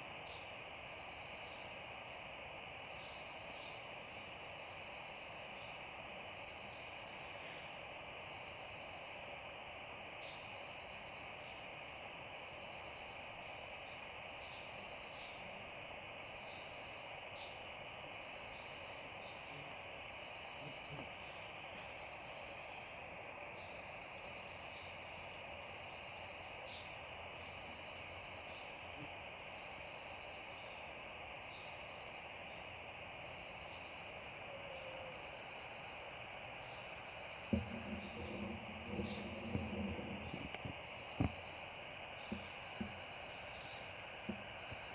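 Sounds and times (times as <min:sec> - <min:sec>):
crickets trilling: 0:00.0 - 0:44.9
steady hiss: 0:00.0 - 0:44.9.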